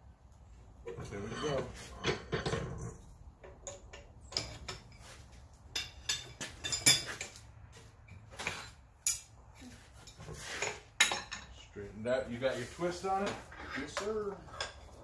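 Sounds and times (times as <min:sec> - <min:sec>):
steel tools clinking on steel bar: 0:01.0 - 0:02.8, 0:05.7 - 0:07.4.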